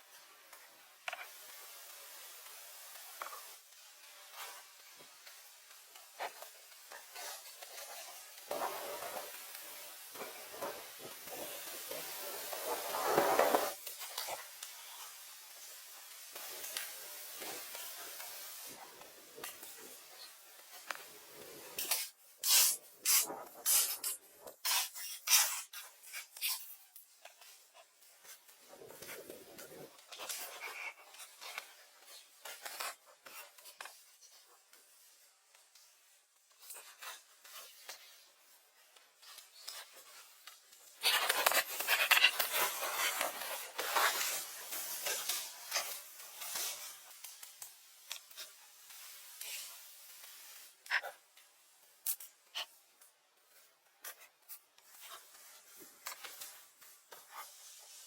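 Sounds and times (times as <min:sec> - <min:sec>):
rubbing and scraping: 0:07.0 - 0:14.4, 0:16.4 - 0:26.7.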